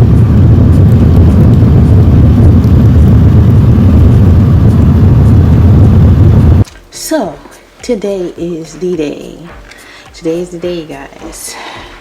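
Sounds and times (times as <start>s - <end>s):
loud low rumble: 0.0s - 6.6s.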